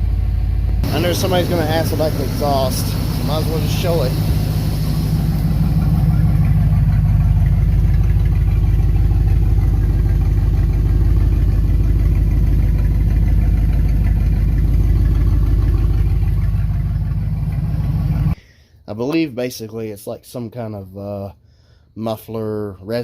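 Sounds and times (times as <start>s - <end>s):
engine idling at exhaust: 0.0s - 18.8s.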